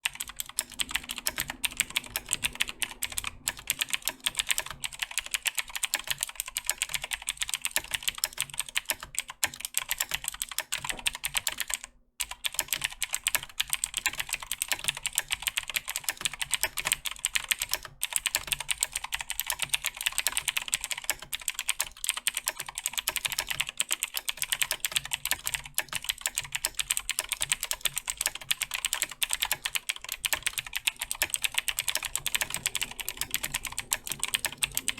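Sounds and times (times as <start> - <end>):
fast typing on mechanical keyboard: 0.0 - 34.9.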